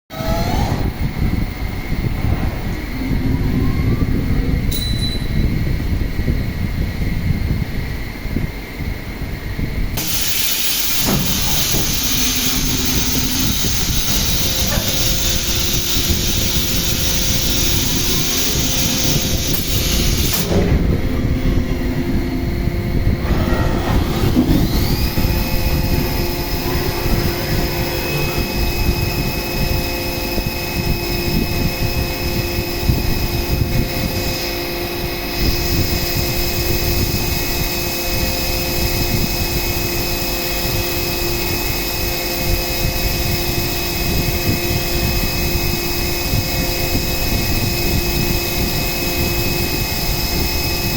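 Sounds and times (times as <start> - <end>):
spindle whine: 0.1 - 50.9
milling machine cutting metal: 10.0 - 50.9.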